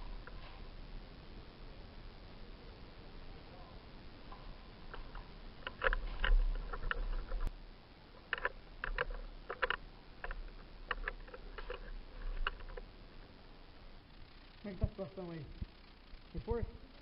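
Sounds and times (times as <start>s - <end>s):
sharp clicks and crunches: 4.3s - 7.5s, 8.2s - 12.9s.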